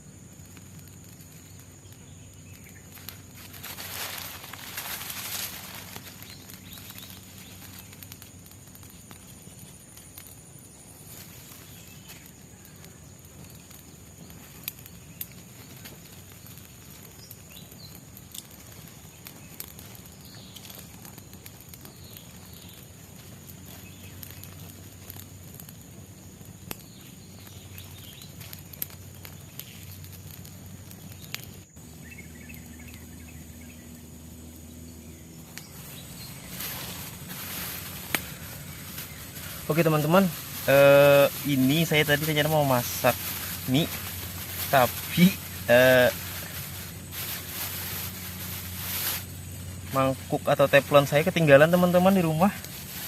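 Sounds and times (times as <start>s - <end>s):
insect drone: 0.0s - 53.0s
bird chirps: 32.0s - 43.9s.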